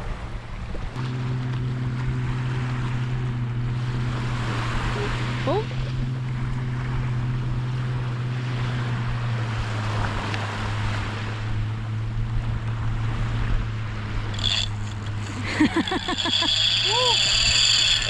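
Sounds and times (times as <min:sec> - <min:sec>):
surf: 0:00.0 - 0:18.0
low drone: 0:00.1 - 0:18.0
fishing reel drag: 0:14.2 - 0:18.0.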